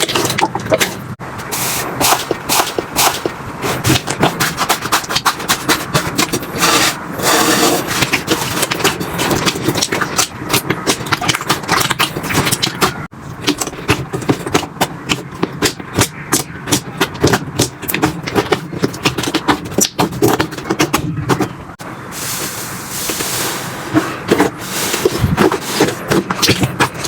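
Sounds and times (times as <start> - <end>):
slime squishing with crackling pops: 7.9 - 21.4.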